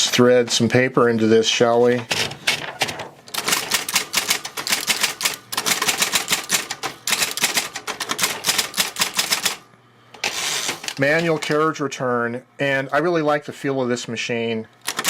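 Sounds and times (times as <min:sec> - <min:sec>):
electric typewriter typing: 0:02.1 - 0:09.6, 0:10.2 - 0:11.7.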